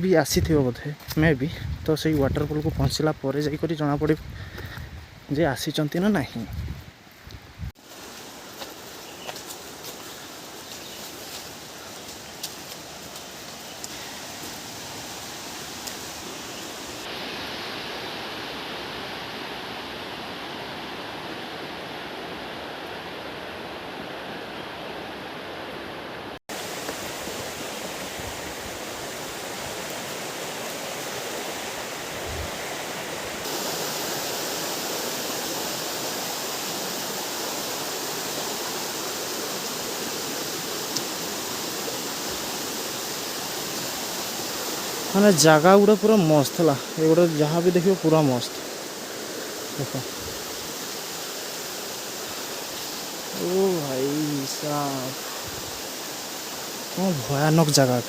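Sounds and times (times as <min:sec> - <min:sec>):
waterfall rushing: 0:07.8 - 0:58.0.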